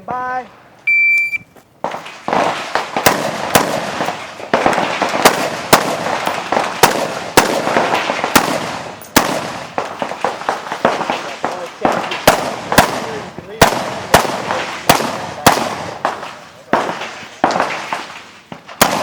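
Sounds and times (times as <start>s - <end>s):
shot timer beep: 0.9s - 1.5s
rifle shots: 1.8s - 19.0s.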